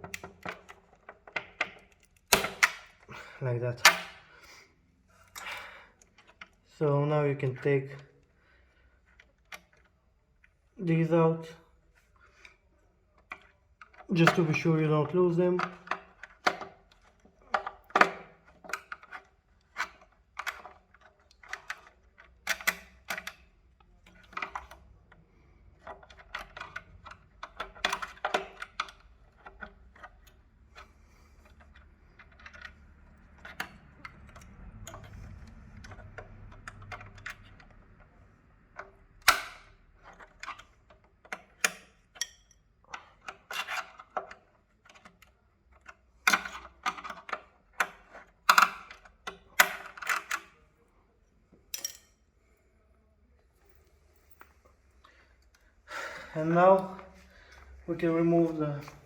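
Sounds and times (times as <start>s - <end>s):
metal parts clinking: 51.7s - 52.2s.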